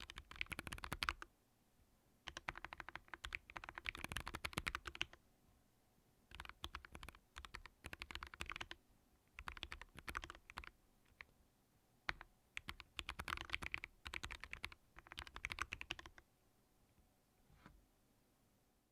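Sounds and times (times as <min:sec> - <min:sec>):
typing on keyboard: 0:00.0 - 0:01.3, 0:02.3 - 0:05.2, 0:06.3 - 0:11.3, 0:12.1 - 0:16.2.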